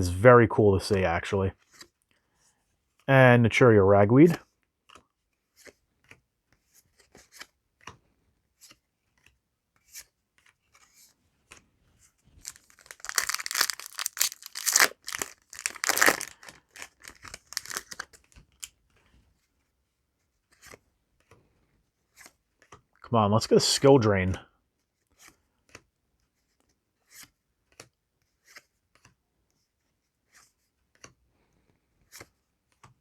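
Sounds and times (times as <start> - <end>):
wrapper tearing and crinkling: 12.4 - 18.3
cards clicking: 12.5 - 18.2.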